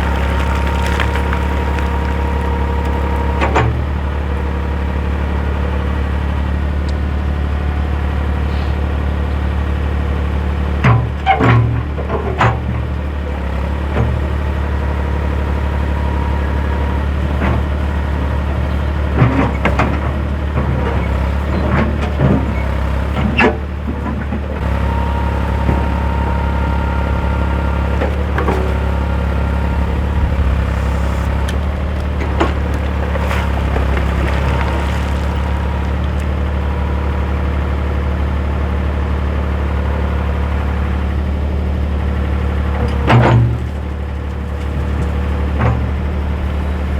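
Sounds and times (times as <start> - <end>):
engine running steadily: 0.0 - 46.9
knocks and clanks: 27.8 - 36.3.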